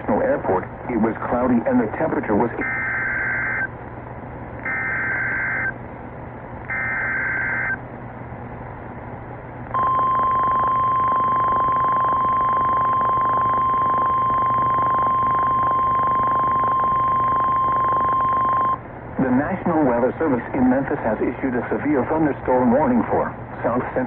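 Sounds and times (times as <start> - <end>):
radio hiss: 0.0 - 3.6, 18.6 - 24.0
steady warning alarm tone: 2.6 - 3.7, 4.6 - 5.8, 6.7 - 7.8, 9.7 - 18.8
shrill data warble bursts: 4.7 - 5.8, 6.7 - 7.8.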